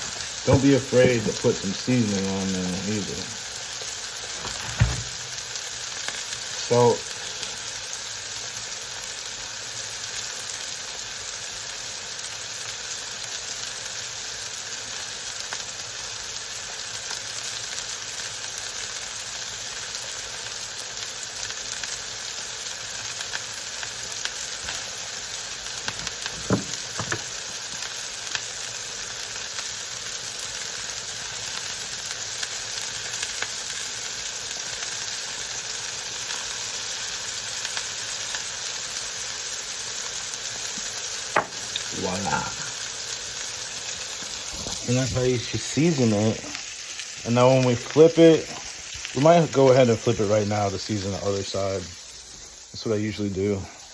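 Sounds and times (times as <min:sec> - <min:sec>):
burger patties sizzling on grill: 0:00.0 - 0:53.9
brief knocks: 0:26.4 - 0:27.3.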